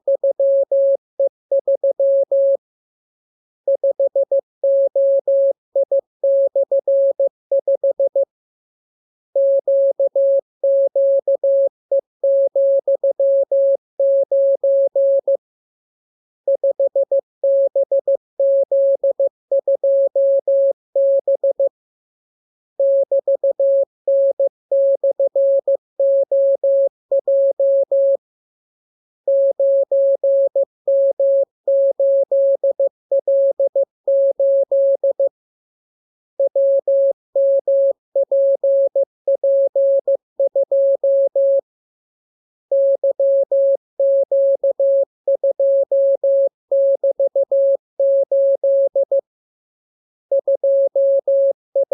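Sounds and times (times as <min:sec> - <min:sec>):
morse code beeps: 0:50.3 - 0:50.6.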